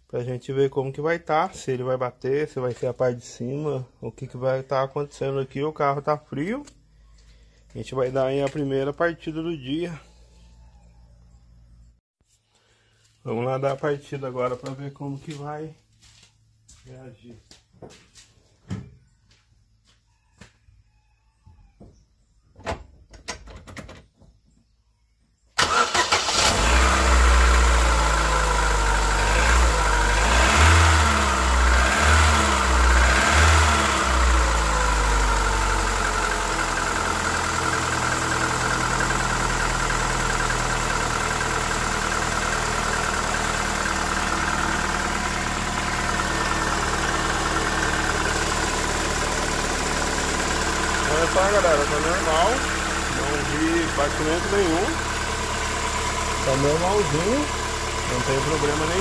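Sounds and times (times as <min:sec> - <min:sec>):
car engine starting and idling: 0:25.6 - 0:59.0.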